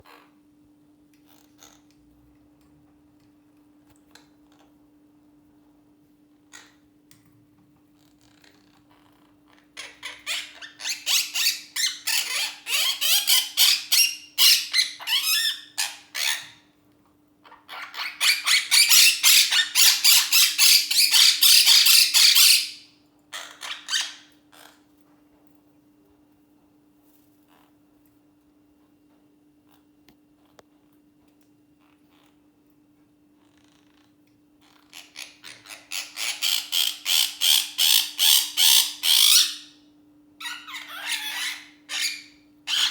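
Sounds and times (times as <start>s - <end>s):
parrots squawking: 8.2s - 16.6s, 17.4s - 24.8s, 34.6s - 39.8s, 40.4s - 42.9s.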